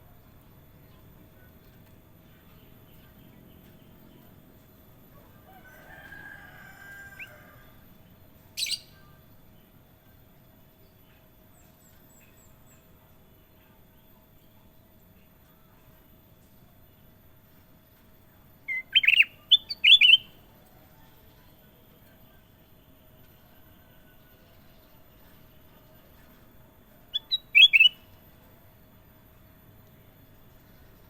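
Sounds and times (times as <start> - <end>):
faint high bird chirps: 8.6 - 9.3, 18.6 - 21.5, 26.9 - 28.2.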